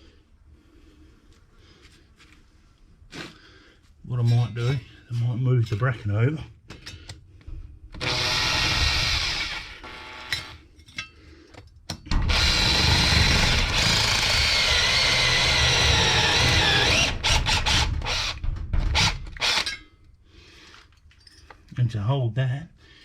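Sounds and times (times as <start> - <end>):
electric drill whining: 8.0 - 10.6, 12.1 - 19.8.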